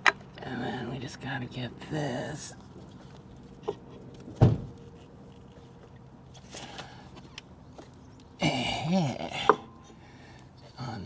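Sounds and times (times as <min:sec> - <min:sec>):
person's strained voice: 0:08.4 - 0:09.7.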